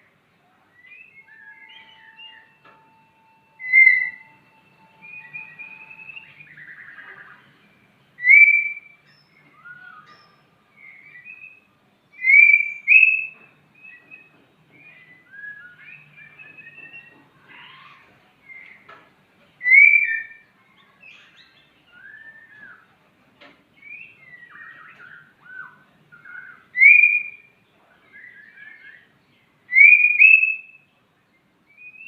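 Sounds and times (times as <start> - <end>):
bird warbles and chirps: 0.0 - 32.0
bird whistling loud notes: 0.8 - 18.8, 19.6 - 20.4, 21.9 - 22.9, 23.8 - 27.5, 29.7 - 30.8.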